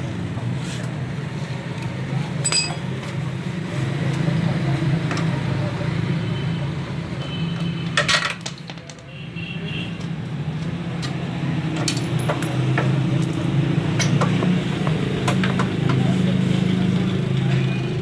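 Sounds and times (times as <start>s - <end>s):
metallic clinks and taps: 1.8s - 2.9s.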